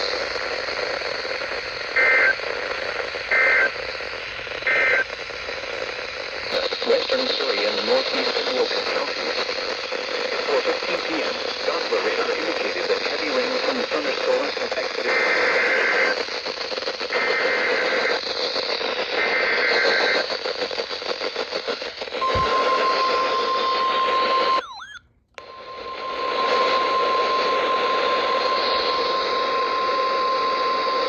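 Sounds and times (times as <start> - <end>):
radio hiss: 0.0 - 31.0
warbling two-tone data code: 22.2 - 28.4
steady warning alarm tone: 22.2 - 30.9.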